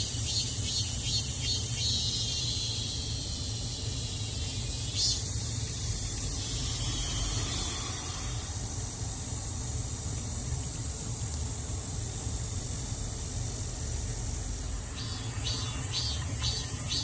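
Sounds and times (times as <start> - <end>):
cicadas buzzing: 0.0 - 17.0
higher louder buzz: 4.0 - 8.6.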